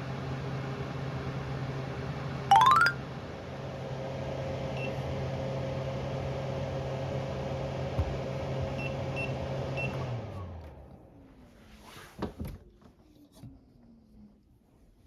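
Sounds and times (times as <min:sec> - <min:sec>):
blower running with a steady hum: 0:00.0 - 0:11.2.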